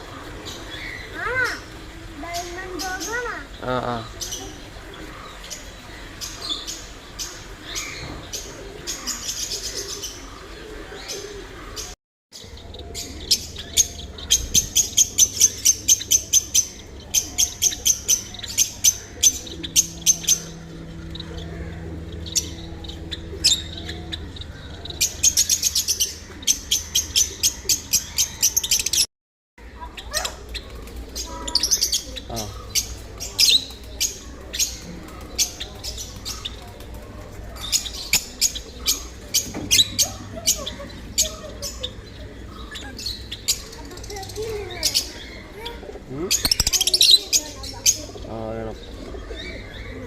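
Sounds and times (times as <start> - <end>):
caged birds chirping: 0.0 - 50.0
faint low hum: 12.5 - 28.6.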